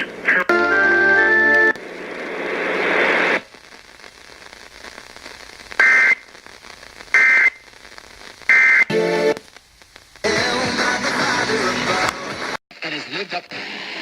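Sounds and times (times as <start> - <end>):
radio static: 0.0 - 0.6, 1.7 - 14.0
shrill two-tone data bursts: 8.5 - 8.9.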